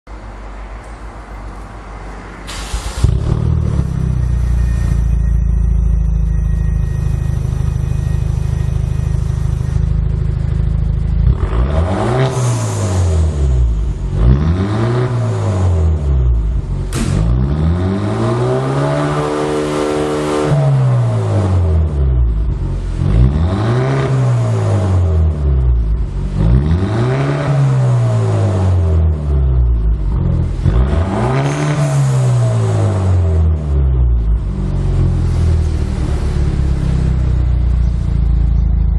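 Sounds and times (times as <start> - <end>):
car engine idling and revving: 0.1 - 38.9
exhaust crack: 2.4 - 6.2, 7.0 - 18.4.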